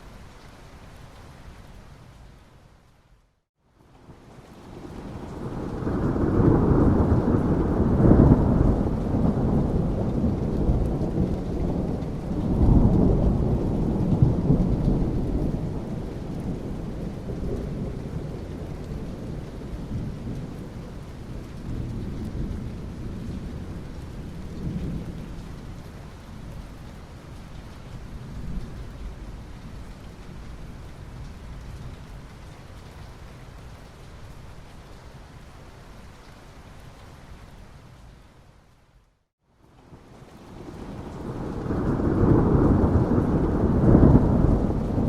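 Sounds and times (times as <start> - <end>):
rain falling: 0.0 - 45.0
rolling thunder: 4.8 - 21.0, 40.6 - 45.0.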